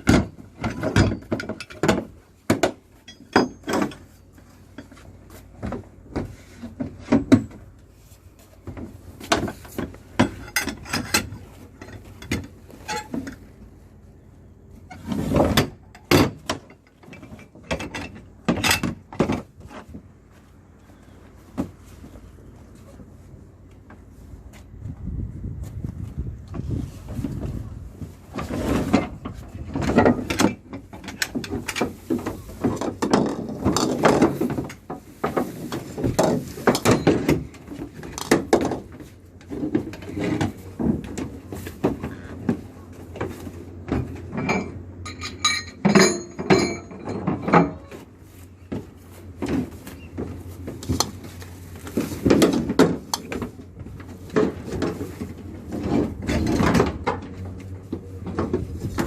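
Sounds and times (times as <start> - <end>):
mechanical clattering and knocking: 0.0 - 4.2, 8.7 - 13.5, 28.3 - 48.0, 48.7 - 59.0
low engine hum: 4.0 - 33.7, 37.4 - 59.0.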